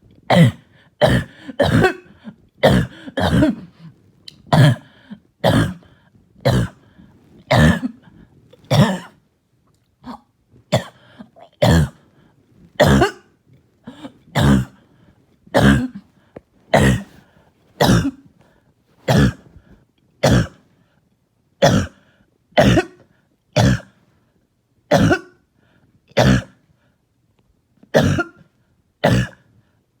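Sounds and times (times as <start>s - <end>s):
person coughing: 0.3s - 6.9s, 7.5s - 9.2s, 10.0s - 12.0s, 12.8s - 14.8s, 15.5s - 16.1s, 16.7s - 18.3s, 19.1s - 19.6s, 20.2s - 20.6s, 21.6s - 22.0s, 22.6s - 24.0s, 24.9s - 25.4s, 26.1s - 26.6s, 27.9s - 29.5s.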